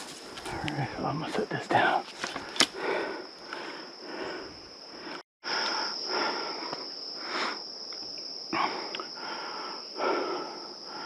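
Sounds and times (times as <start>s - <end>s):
high-pitched insect drone: 0.1s - 11.0s
person breathing hard: 2.3s - 7.7s, 8.5s - 11.0s.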